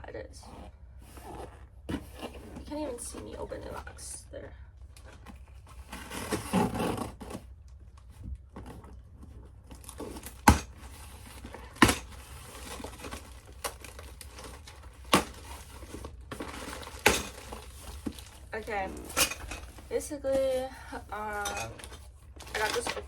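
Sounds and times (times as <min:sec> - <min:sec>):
packaging tearing and crinkling: 0:08.6 - 0:19.9.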